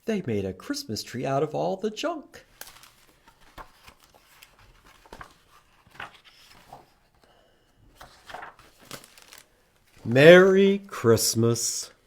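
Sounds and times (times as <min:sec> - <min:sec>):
picture book pages turning: 0:02.4 - 0:10.4.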